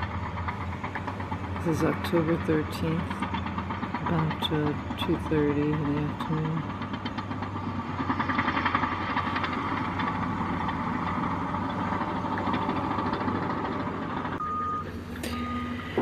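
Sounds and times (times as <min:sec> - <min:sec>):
rattling and clatter: 0:00.0 - 0:14.4
diesel engines running: 0:00.0 - 0:16.0
reversing alarm beeping: 0:14.4 - 0:16.0.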